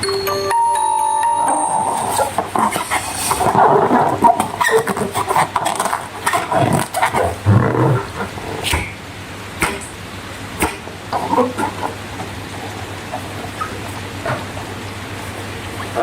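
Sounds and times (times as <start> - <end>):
rubbery balloon squeak: 2.2 - 7.6.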